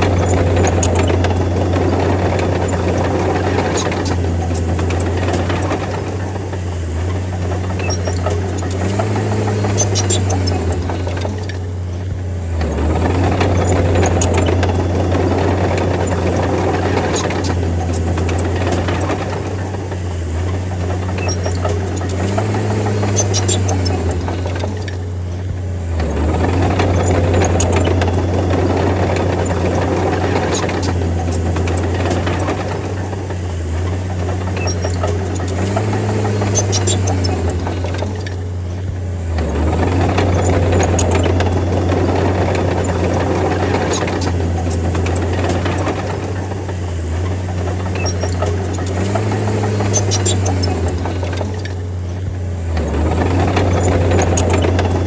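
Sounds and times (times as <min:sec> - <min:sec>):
bulldozer diesel engine drone: 0:00.0 - 0:55.0.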